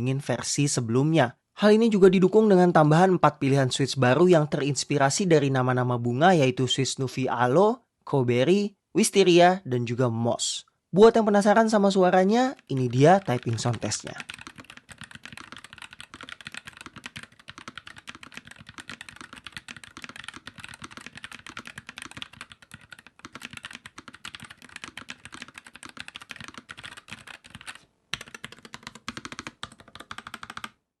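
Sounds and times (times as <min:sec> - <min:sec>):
mechanical keyboard typing: 0:12.3 - 0:30.8.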